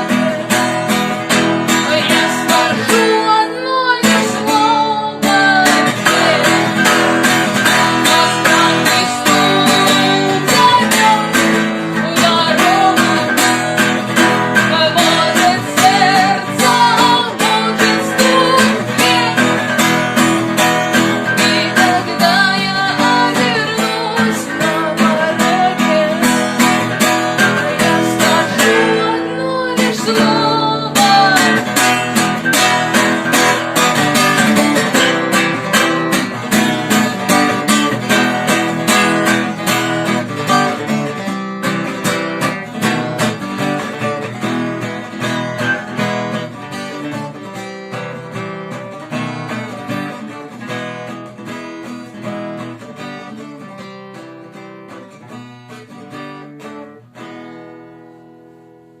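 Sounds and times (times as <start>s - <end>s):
person singing: 0.0s - 33.5s
acoustic guitar strumming: 0.0s - 59.0s.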